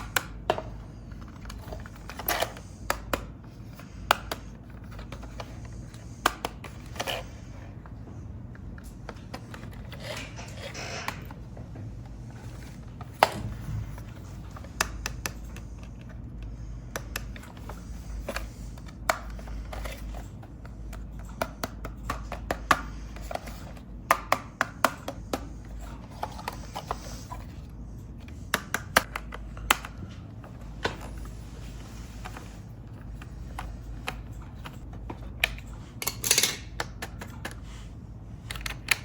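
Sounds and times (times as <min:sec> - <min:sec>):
steady low hum: 0:00.0 - 0:39.0.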